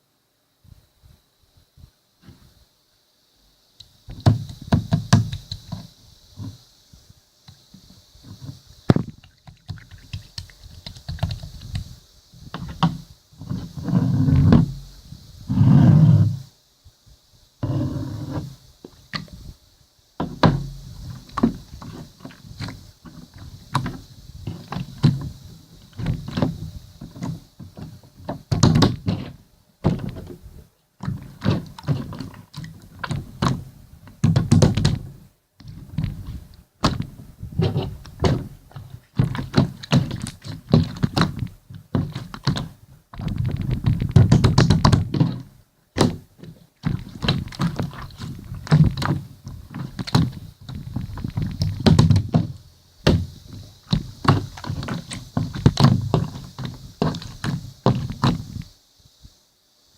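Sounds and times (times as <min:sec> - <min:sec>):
dull thumps and knocks: 0:04.1 - 0:06.6, 0:07.5 - 0:11.9, 0:12.5 - 0:14.9, 0:20.2 - 0:30.4, 0:31.0 - 0:58.7.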